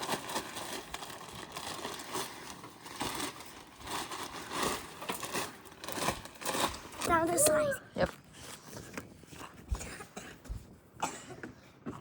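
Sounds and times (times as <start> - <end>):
plastic bag rustling: 0.0 - 9.4.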